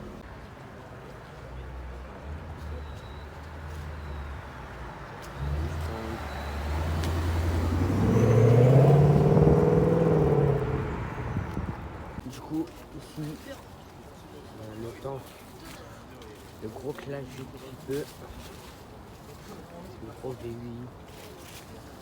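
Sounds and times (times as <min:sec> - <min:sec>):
car engine accelerating past: 0:05.3 - 0:12.2.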